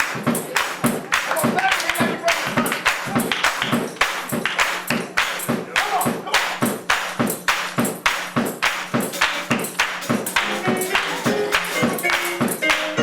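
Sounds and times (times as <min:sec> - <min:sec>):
sharp percussion strikes: 0:00.0 - 0:13.0
live gospel music: 0:09.2 - 0:13.0.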